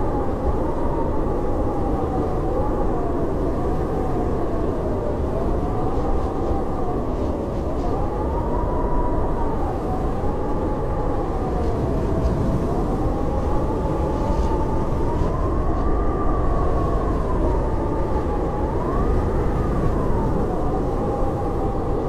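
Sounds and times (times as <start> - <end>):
howling blizzard wind: 0.0 - 22.0.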